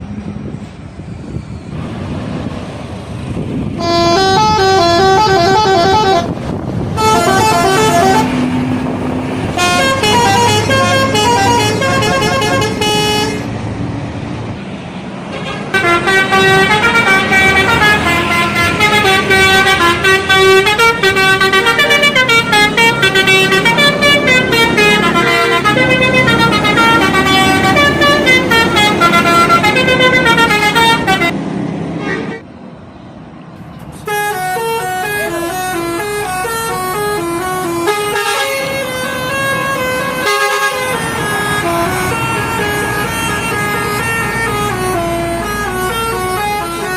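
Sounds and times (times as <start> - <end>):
multi-tone bus horns: 3.6 - 13.6, 15.2 - 32.5, 34.0 - 46.9.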